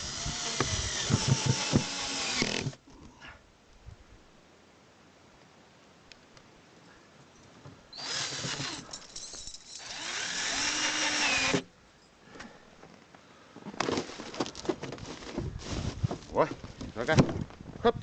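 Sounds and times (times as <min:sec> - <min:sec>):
power drill whining: 0:00.0 - 0:02.8, 0:08.0 - 0:11.7.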